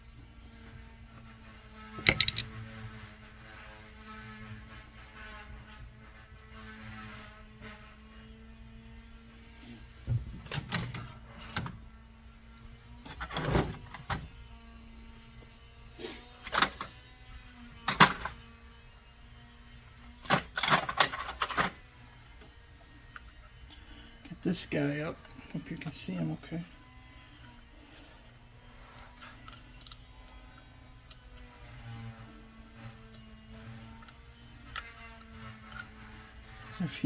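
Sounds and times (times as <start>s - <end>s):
metal parts and tools clattering: 2.0s - 2.6s, 10.1s - 11.8s, 13.1s - 14.2s, 17.8s - 18.4s, 20.2s - 21.8s.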